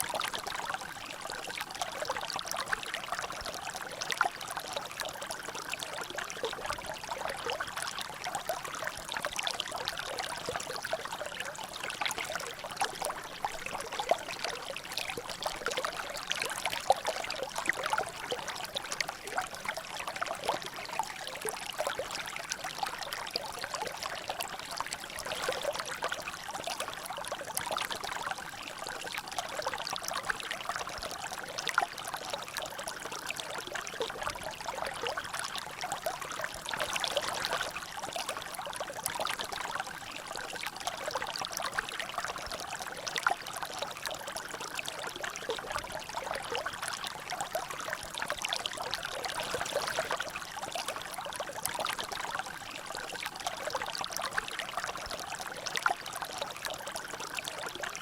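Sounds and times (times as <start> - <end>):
water trickling and splashing: 0.0 - 58.0.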